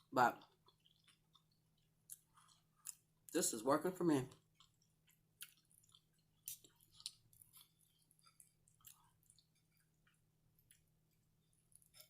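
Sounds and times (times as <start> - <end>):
wet chewing mouth clicks: 0.4 - 3.1, 4.4 - 12.0.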